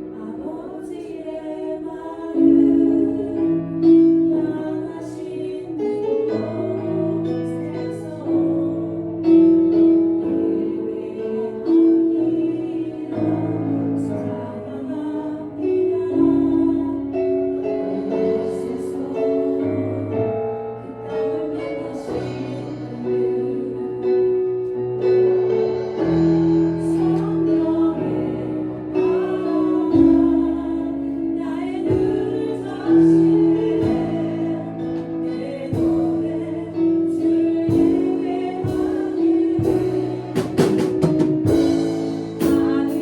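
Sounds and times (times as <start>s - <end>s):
piano accompaniment: 0.0s - 43.0s.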